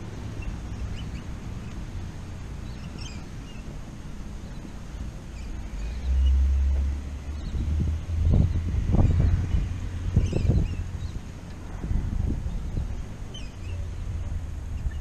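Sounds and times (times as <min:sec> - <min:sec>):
wind buffeting microphone: 0:00.0 - 0:15.0
faint bird chirps: 0:02.6 - 0:03.7.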